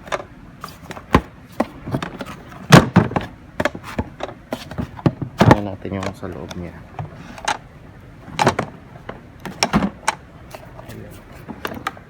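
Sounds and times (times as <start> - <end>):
vacuum cleaner clicks and knocks: 0.9 - 7.6, 8.3 - 10.2, 11.4 - 12.0.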